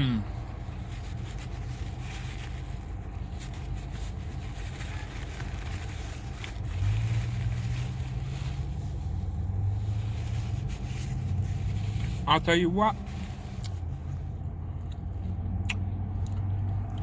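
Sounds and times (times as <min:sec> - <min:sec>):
low engine rumble: 0:00.0 - 0:17.0.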